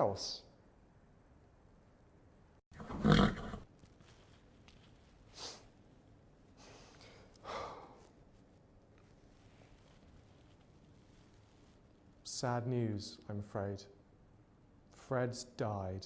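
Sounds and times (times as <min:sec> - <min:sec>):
horse snorting: 0:02.8 - 0:03.6.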